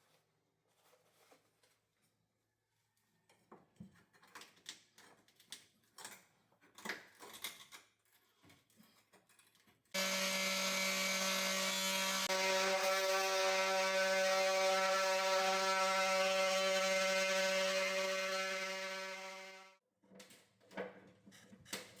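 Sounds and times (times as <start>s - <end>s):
electric power tool buzzing: 10.0s - 19.8s.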